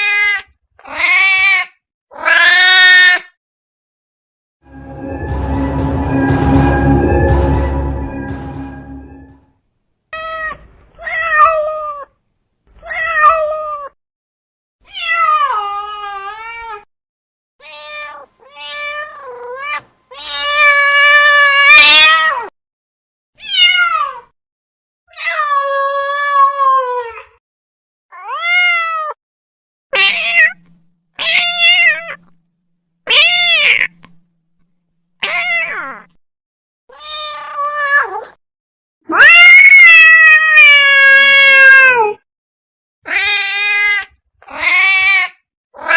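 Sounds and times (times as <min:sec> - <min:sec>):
cat meowing: 0:00.0 - 0:03.2, 0:30.0 - 0:32.2, 0:35.2 - 0:36.1, 0:36.9 - 0:38.3, 0:39.1 - 0:42.2, 0:43.1 - 0:45.9.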